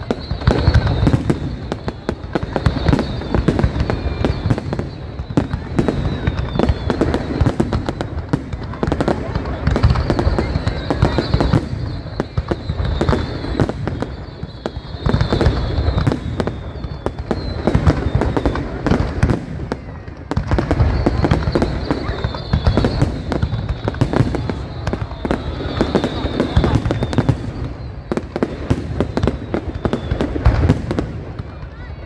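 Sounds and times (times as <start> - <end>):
fireworks booming bursts: 0.0 - 32.0
fireworks crackling: 0.0 - 32.0.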